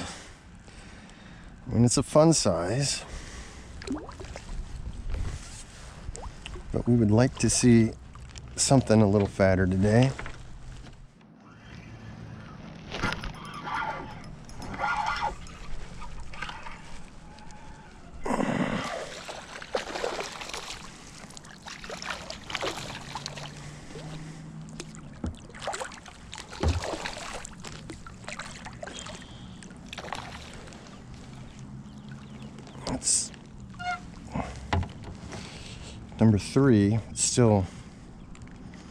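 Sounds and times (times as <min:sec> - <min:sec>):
water sloshing around kayak: 0:03.0 - 0:11.1, 0:12.7 - 0:36.2
knocks and handling noises: 0:34.7 - 0:35.4.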